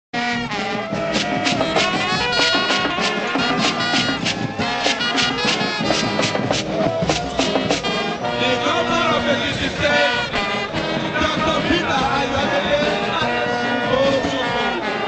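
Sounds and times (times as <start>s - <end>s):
brass band music: 0.1s - 15.0s
quick percussion beat: 0.5s - 8.2s, 10.4s - 15.0s.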